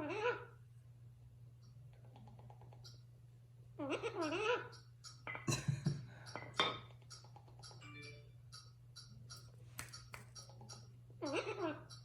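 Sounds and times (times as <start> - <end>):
parrot chattering: 3.8 - 5.2, 10.0 - 12.0.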